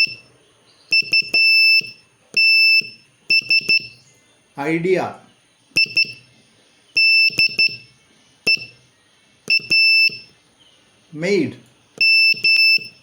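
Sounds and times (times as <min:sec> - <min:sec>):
morse code beeping: 0:00.0 - 0:00.3, 0:00.9 - 0:04.1, 0:05.8 - 0:06.3, 0:07.0 - 0:08.8, 0:09.5 - 0:10.4, 0:12.0 - 0:13.0.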